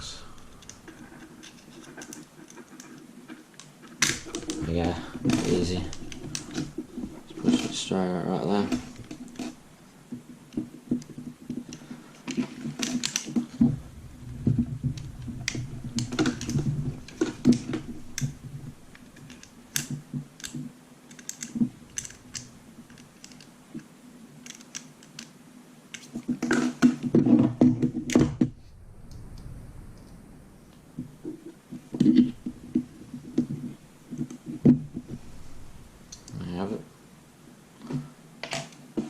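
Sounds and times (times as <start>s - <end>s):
parts clattering: 0.0s - 28.7s
metal and plastic parts clicking: 0.4s - 9.6s, 10.5s - 28.4s.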